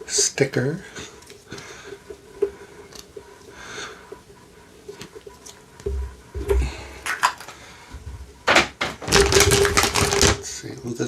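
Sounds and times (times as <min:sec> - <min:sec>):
soft thumps: 0:05.8 - 0:07.0
crinkly packaging rattle: 0:09.0 - 0:10.5.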